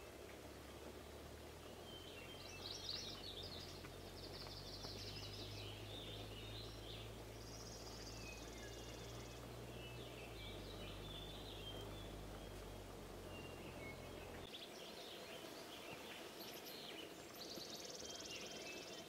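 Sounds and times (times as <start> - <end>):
steady low hum: 0.0 - 14.5
songbirds chirping: 0.0 - 19.0.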